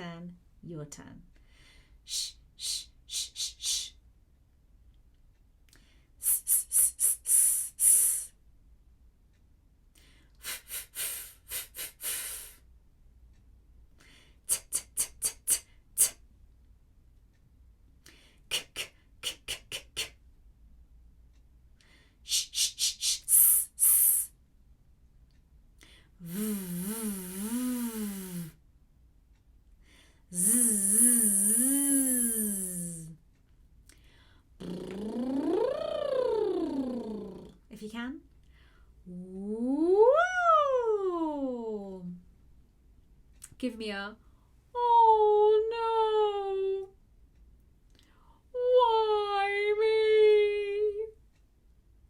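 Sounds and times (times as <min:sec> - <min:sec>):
woman's voice gliding up and down: 0:00.0 - 0:01.2, 0:02.1 - 0:04.0, 0:06.2 - 0:08.3, 0:10.4 - 0:12.6, 0:14.5 - 0:16.2, 0:18.5 - 0:20.2, 0:22.3 - 0:24.3, 0:26.2 - 0:28.6, 0:30.3 - 0:33.2, 0:34.6 - 0:38.3, 0:39.0 - 0:42.3, 0:43.4 - 0:47.0, 0:48.5 - 0:51.2
woman making hissing sounds: 0:02.1 - 0:04.0, 0:06.2 - 0:08.4, 0:10.4 - 0:12.6, 0:14.5 - 0:16.2, 0:18.4 - 0:20.2, 0:22.2 - 0:24.4, 0:26.2 - 0:28.6, 0:30.3 - 0:33.2, 0:34.6 - 0:37.5.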